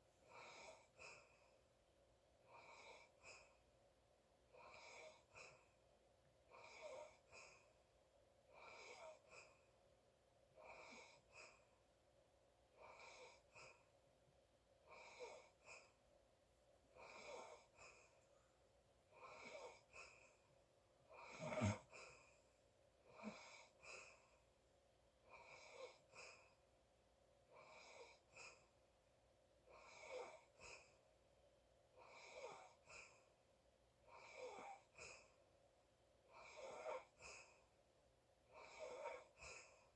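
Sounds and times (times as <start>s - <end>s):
person snoring: 21.2s - 21.9s.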